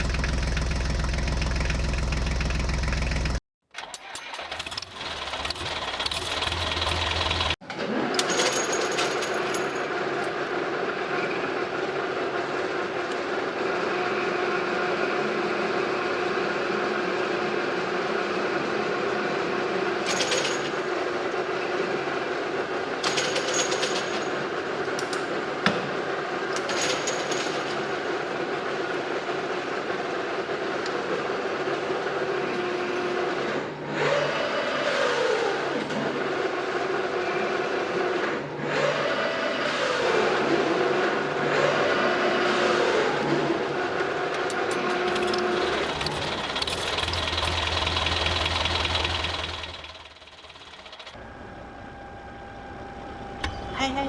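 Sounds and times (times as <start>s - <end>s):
toy excavator motors whining: 37.0s - 51.2s.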